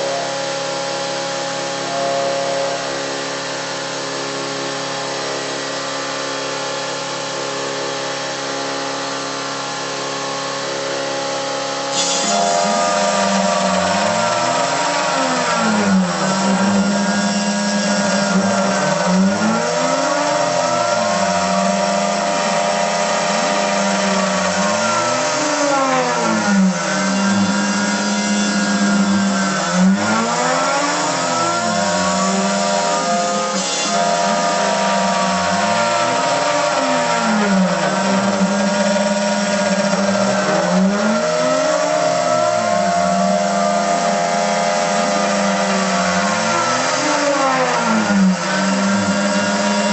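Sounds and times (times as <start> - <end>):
axis motors whining: 0.0 - 49.9
router spindle cutting hiss: 11.1 - 49.9.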